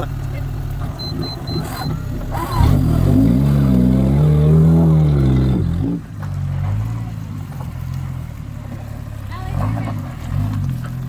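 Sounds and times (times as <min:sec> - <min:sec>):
engine revving hard: 0:00.8 - 0:07.1, 0:09.3 - 0:11.0.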